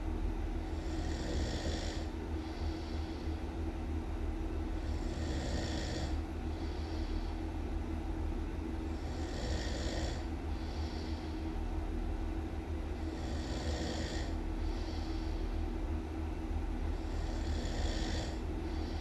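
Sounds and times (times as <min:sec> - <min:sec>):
steady low hum: 0:00.0 - 0:19.0
person snoring: 0:00.8 - 0:02.1, 0:04.8 - 0:07.1, 0:09.0 - 0:11.2, 0:13.0 - 0:15.1, 0:17.0 - 0:19.0.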